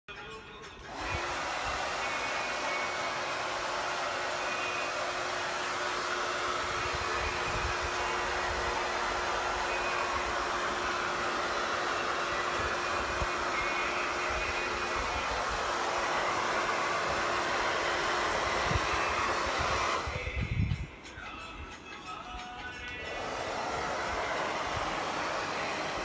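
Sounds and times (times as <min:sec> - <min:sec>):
hair dryer blowing: 0:00.8 - 0:26.0.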